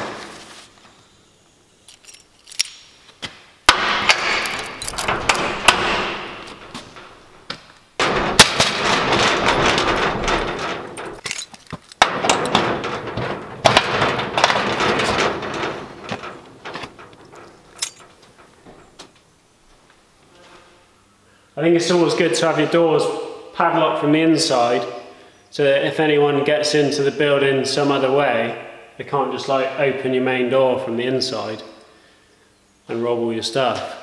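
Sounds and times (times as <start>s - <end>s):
metal clattering and rattling: 1.9s - 2.7s, 3.7s - 20.2s.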